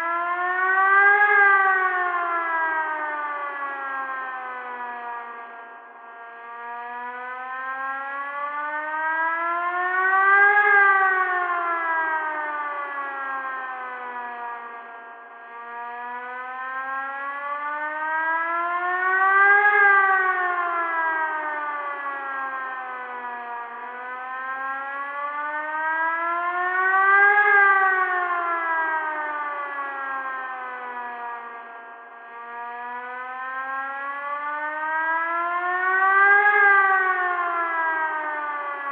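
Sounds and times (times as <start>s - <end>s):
warning siren wailing: 0.0s - 38.9s.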